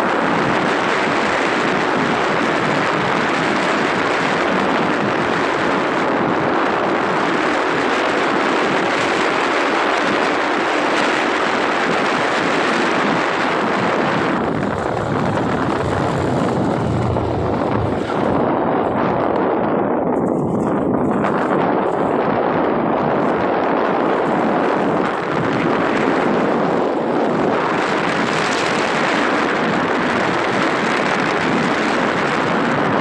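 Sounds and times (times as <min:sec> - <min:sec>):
vehicle road noise: 0:00.0 - 0:33.0
wind rushing: 0:11.9 - 0:31.7.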